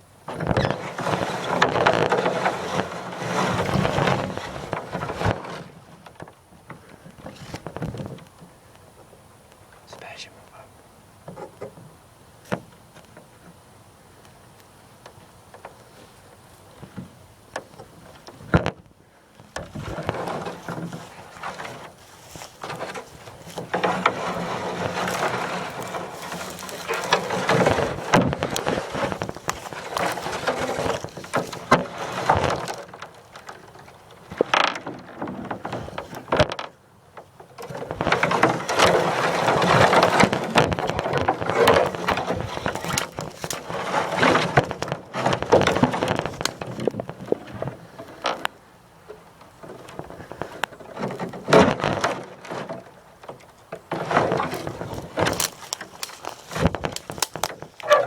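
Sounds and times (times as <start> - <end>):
microphone handling noise: 0.3 - 5.8, 6.8 - 8.5, 15.7 - 33.0, 37.7 - 48.5, 54.0 - 58.0
footsteps crunching dry leaves: 20.1 - 32.4, 38.9 - 44.5, 54.4 - 58.0.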